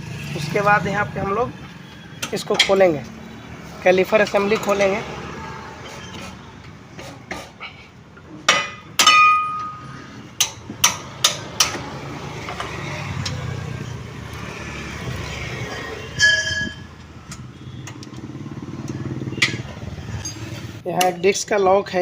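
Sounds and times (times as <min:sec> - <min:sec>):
sharp knocks: 0:10.4 - 0:11.9
metal tools clinking: 0:16.2 - 0:16.9, 0:19.4 - 0:20.7.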